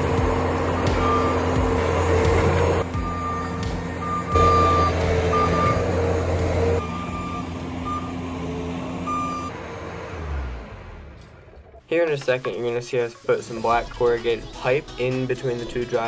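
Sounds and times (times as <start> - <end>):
skid steer engine running: 0.0 - 11.8
back-up alarm beeping: 1.0 - 1.6, 2.8 - 5.9, 6.7 - 8.2, 9.1 - 9.5.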